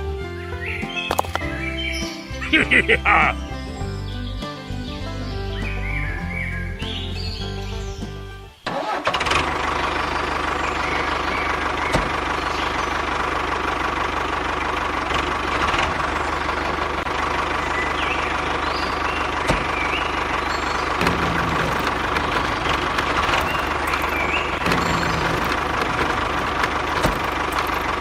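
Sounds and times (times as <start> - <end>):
music: 0.0 - 8.9
birds chirping: 0.4 - 8.7, 10.0 - 13.4, 17.5 - 28.0
small engine running: 8.8 - 28.0.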